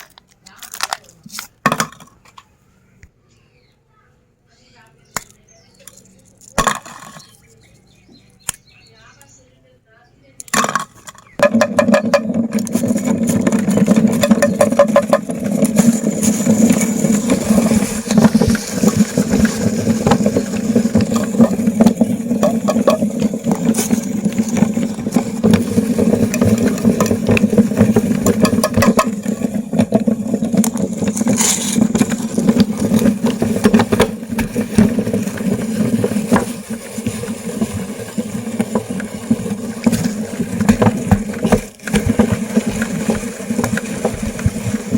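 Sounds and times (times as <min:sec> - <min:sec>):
cones crackling and crunching: 0:00.0 - 0:01.6, 0:05.0 - 0:09.4, 0:10.3 - 0:44.9
meat grinder motor hum: 0:11.4 - 0:44.9.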